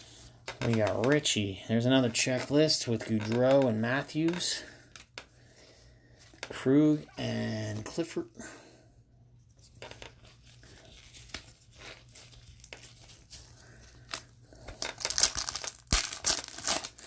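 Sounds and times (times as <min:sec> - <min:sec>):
wrapper tearing and crinkling: 0:14.0 - 0:17.0.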